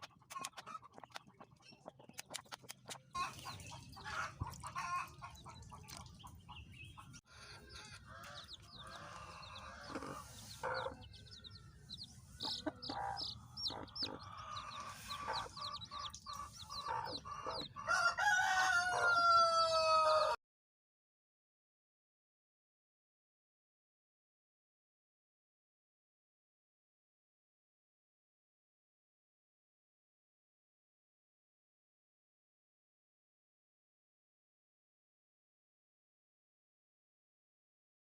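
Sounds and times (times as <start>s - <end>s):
chickens clucking: 0.0s - 20.4s
rooster crowing: 17.8s - 20.4s.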